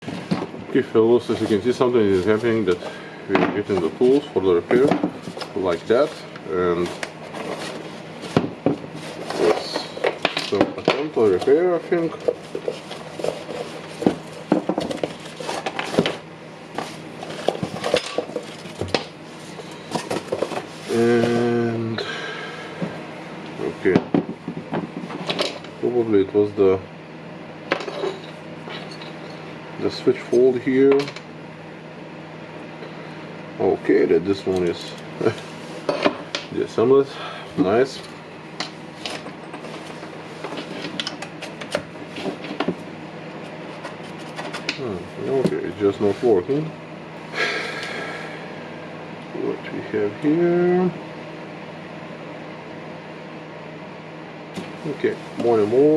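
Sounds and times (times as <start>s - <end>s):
tools and parts clicking and clinking: 17.4s - 18.7s.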